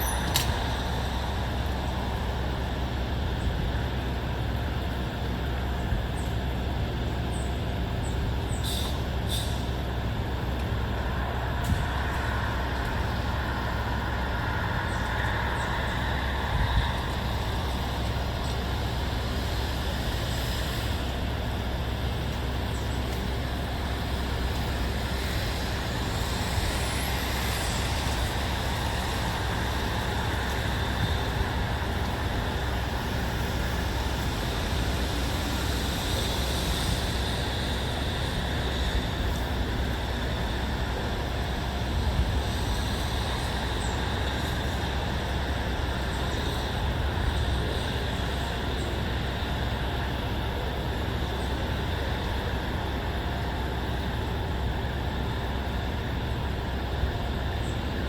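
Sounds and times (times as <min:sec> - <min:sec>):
faint high ticks: 0:00.0 - 0:00.6
distant road traffic rumble: 0:00.0 - 0:58.0.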